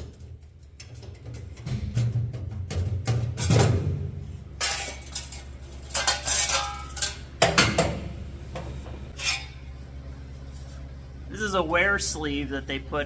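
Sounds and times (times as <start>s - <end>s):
metal parts clinking: 4.6s - 7.2s.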